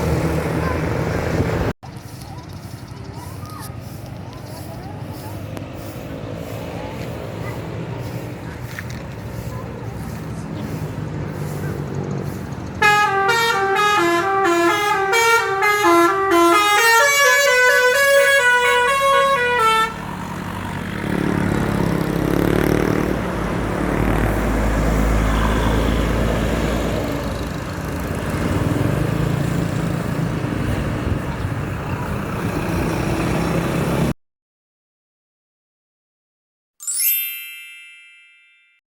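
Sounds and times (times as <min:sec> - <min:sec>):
bus engine rumbling: 0:00.0 - 0:34.2
road noise: 0:00.0 - 0:34.2
bus musical horn melody: 0:12.8 - 0:20.3.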